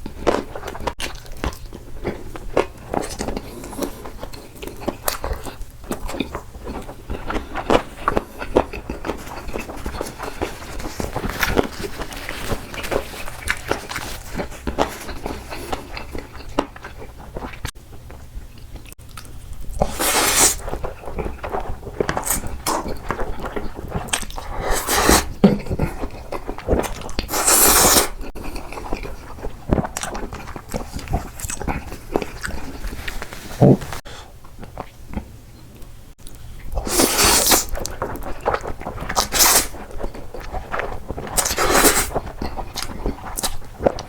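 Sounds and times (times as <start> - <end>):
person chewing food: 0.0 - 44.0
loud biting or slurping: 19.8 - 20.8, 22.2 - 23.0, 24.1 - 25.4, 26.8 - 28.2, 36.8 - 37.9, 39.1 - 39.9, 41.4 - 42.2.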